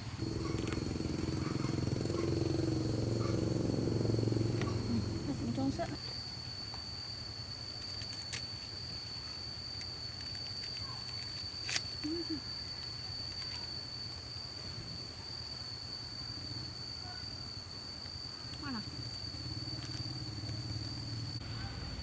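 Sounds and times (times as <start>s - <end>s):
low hum: 0.0s - 6.0s
high-pitched insect drone: 0.0s - 22.0s.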